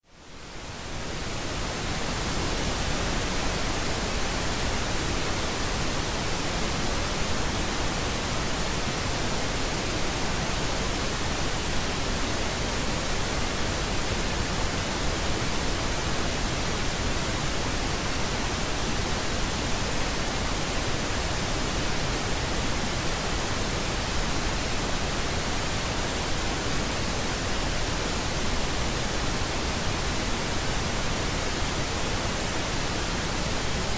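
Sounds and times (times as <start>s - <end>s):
pink noise hiss: 0.0s - 33.9s.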